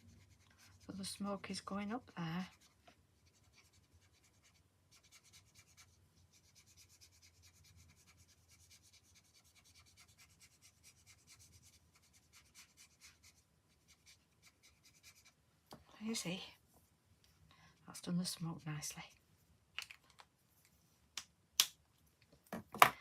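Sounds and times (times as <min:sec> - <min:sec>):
marker scratching on card: 0:00.0 - 0:01.2, 0:02.2 - 0:15.4.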